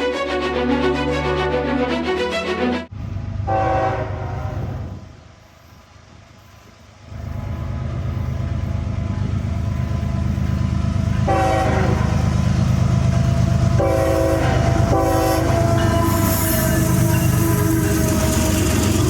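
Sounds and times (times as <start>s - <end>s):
train rumbling: 0.0s - 19.0s
train horn blowing: 3.5s - 5.0s, 11.2s - 12.4s, 13.7s - 19.0s.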